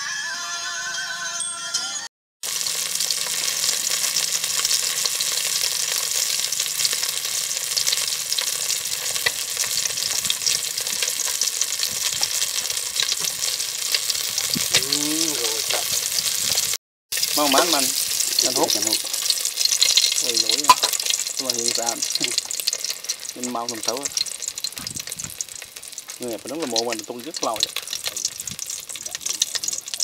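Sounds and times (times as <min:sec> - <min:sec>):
food frying in hot oil: 0:02.4 - 0:30.0
person speaking: 0:14.6 - 0:16.0, 0:17.3 - 0:19.1, 0:20.2 - 0:22.4, 0:23.4 - 0:24.1, 0:26.2 - 0:27.7.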